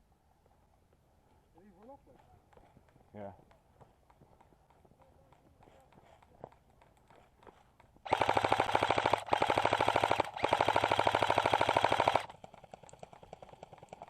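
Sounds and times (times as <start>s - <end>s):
airsoft rifle firing bursts: 8.0s - 14.0s.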